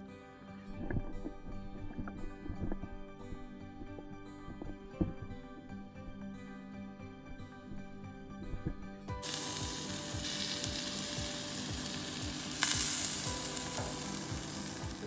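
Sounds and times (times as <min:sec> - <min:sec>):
music with steady beat: 0:08.6 - 0:15.0
steady hissing noise: 0:09.2 - 0:15.0.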